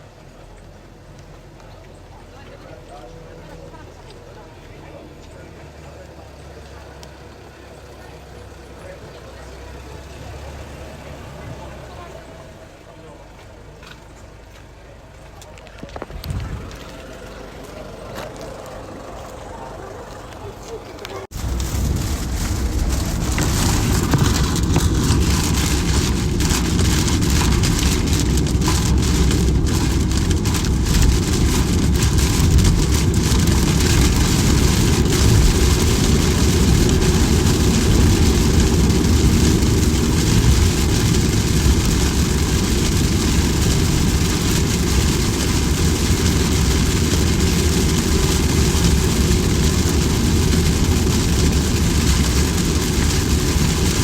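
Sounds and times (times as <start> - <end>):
steady rain falling: 0.1 - 54.0
low rumble: 15.8 - 54.0.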